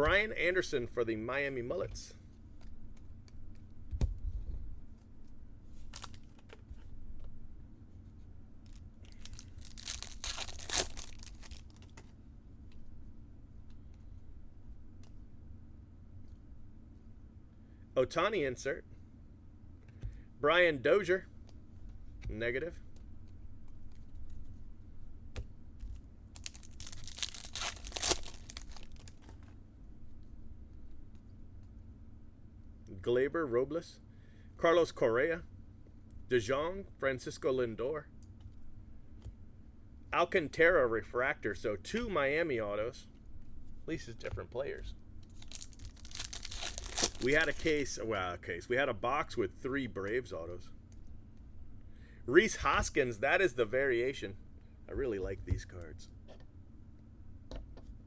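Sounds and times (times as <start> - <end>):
foil wrapper tearing: 9.0 - 11.9, 26.4 - 29.4, 45.3 - 47.9.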